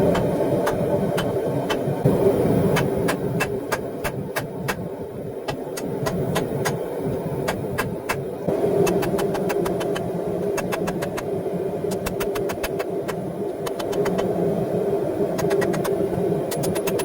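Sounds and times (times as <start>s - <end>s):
forge equipment rushing noise: 5.5s - 14.4s.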